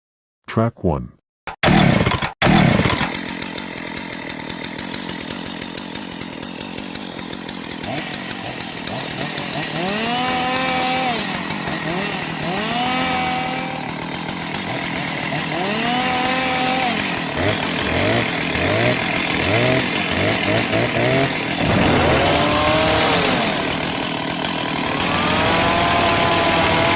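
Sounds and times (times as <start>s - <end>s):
chainsaw engine starting: 1.6s - 26.9s
chainsaw revving: 1.6s - 26.9s
chainsaw idling: 1.7s - 26.9s.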